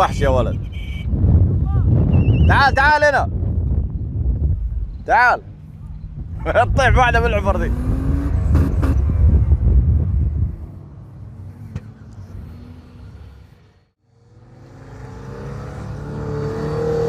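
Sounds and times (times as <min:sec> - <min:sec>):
off-road vehicle engine revving: 0:04.5 - 0:17.0.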